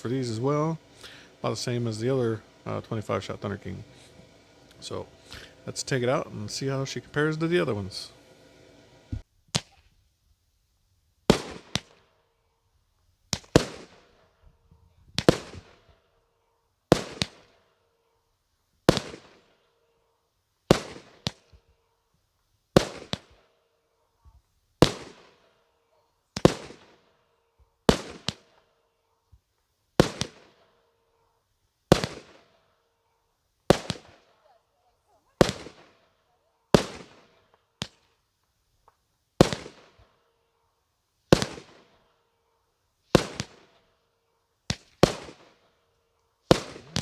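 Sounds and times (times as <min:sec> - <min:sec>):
firework crackling tail: 0:00.0 - 0:09.2, 0:31.9 - 0:32.4, 0:35.3 - 0:36.0, 0:36.7 - 0:38.1, 0:39.4 - 0:40.0, 0:41.3 - 0:42.0, 0:43.2 - 0:43.8, 0:44.7 - 0:45.6, 0:46.4 - 0:47.0
loud salute bangs: 0:00.0 - 0:09.2
firework launch pops: 0:15.2 - 0:15.8, 0:22.8 - 0:23.4, 0:26.4 - 0:26.9, 0:27.9 - 0:28.4, 0:30.0 - 0:30.6, 0:31.9 - 0:32.5, 0:33.7 - 0:34.2, 0:35.4 - 0:36.0, 0:36.7 - 0:38.1, 0:38.8 - 0:40.1, 0:41.3 - 0:41.9, 0:43.2 - 0:43.7, 0:44.7 - 0:45.5, 0:46.5 - 0:47.0.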